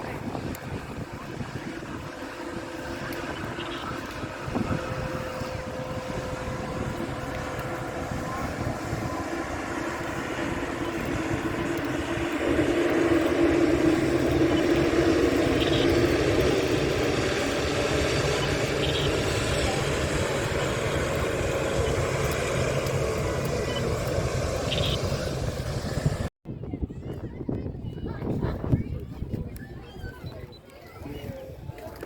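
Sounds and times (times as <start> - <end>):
jet engines rumbling: 0.0 - 26.3.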